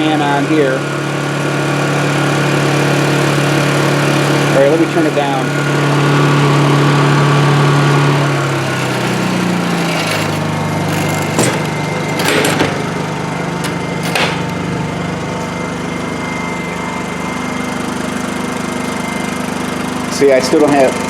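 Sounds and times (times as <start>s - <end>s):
generator engine running: 2.2s - 20.1s
short knocks and rustles: 8.2s - 14.7s.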